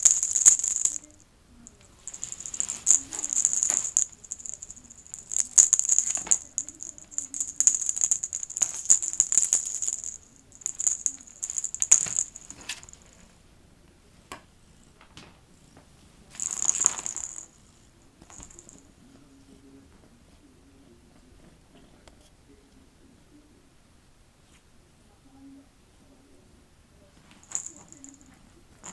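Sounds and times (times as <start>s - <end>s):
jingle bell rattling: 0.0s - 1.2s, 2.0s - 13.2s, 16.4s - 17.5s, 18.3s - 18.8s, 27.4s - 28.9s.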